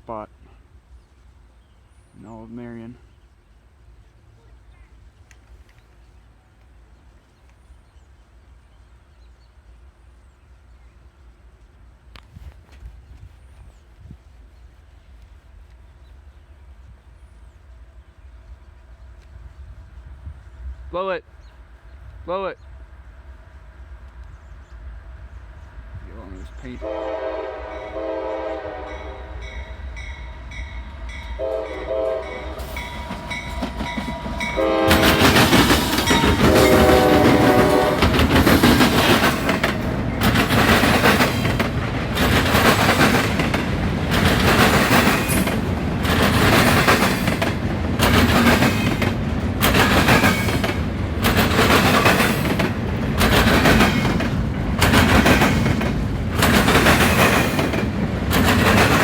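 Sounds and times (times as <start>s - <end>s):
locomotive air horn blasts: 26.8s - 29.8s, 31.4s - 33.6s, 34.2s - 35.5s, 36.1s - 38.2s
train wheels banging over crossing: 28.8s - 59.0s.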